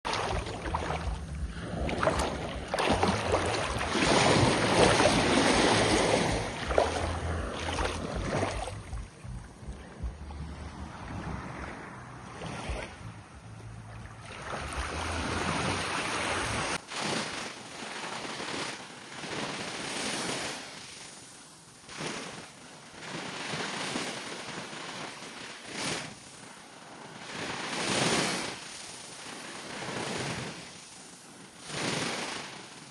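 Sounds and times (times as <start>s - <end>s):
sea waves breaking on beach: 0.0s - 13.1s, 13.9s - 32.9s
wind buffeting microphone: 0.1s - 16.8s.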